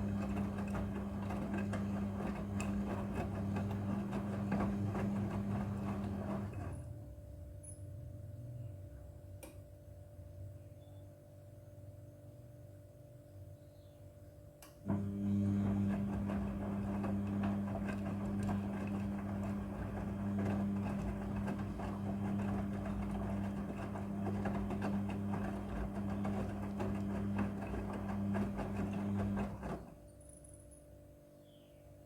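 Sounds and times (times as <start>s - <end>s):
washing machine motor hum: 0.0s - 7.4s, 14.8s - 30.1s.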